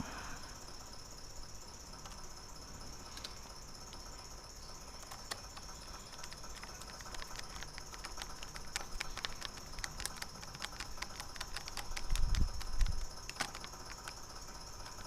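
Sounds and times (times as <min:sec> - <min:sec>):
screwdriver clicking on screws: 0:05.0 - 0:14.2.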